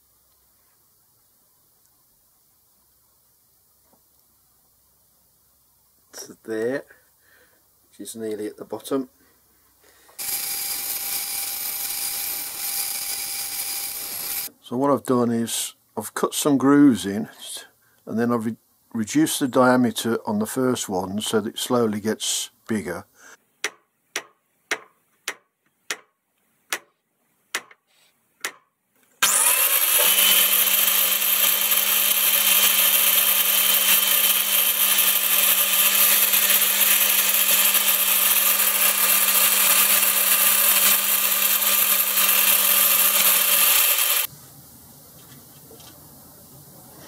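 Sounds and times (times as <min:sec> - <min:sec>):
angle grinder grinding: 0:10.2 - 0:14.5, 0:29.2 - 0:44.3.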